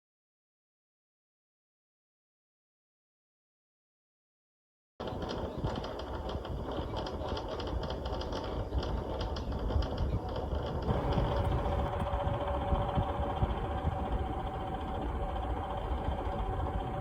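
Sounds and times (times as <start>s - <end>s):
air conditioner rattling: 5.0s - 17.0s
steady hum: 5.0s - 17.0s
low rumble: 5.2s - 17.0s.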